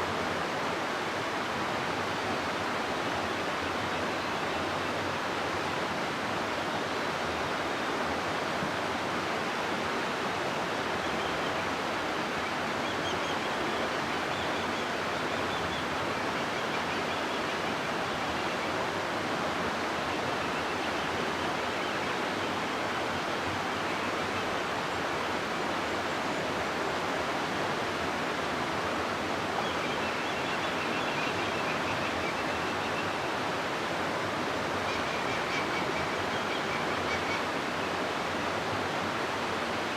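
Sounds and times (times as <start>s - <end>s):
river rushing: 0.0s - 39.9s.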